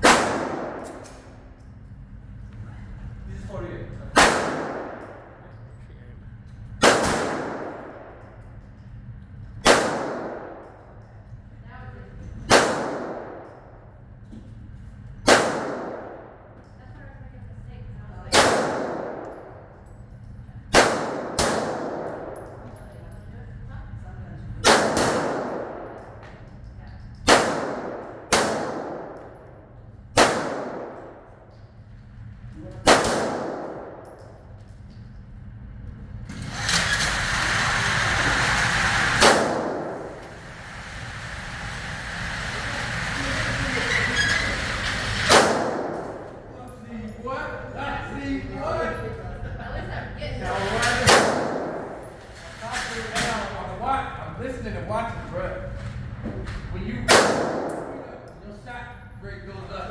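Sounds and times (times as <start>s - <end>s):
handgun shot with echo: 0.0s - 1.4s, 4.2s - 5.4s, 6.8s - 8.1s, 9.6s - 10.7s, 12.5s - 13.5s, 15.3s - 16.2s, 18.3s - 19.6s, 20.7s - 22.6s, 24.6s - 26.1s, 27.2s - 29.4s, 30.2s - 31.3s, 32.8s - 34.2s, 39.2s - 40.2s, 45.2s - 46.4s, 51.0s - 52.1s, 57.1s - 58.1s.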